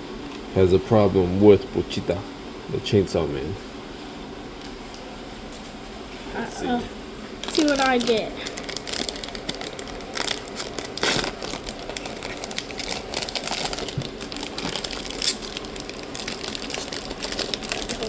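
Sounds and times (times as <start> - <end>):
packaging crinkling and scraping: 7.4 - 18.0.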